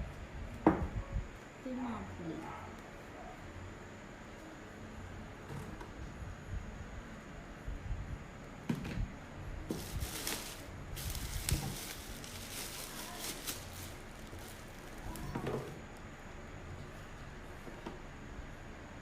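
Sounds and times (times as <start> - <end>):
plastic wrap and cardboard rustling: 9.6 - 16.0.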